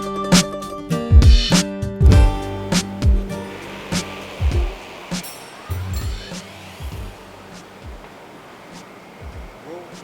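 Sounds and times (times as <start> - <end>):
drum hits: 1.2 - 8.2
electronic music: 2.1 - 8.1
deep sliding bass notes: 2.1 - 8.4.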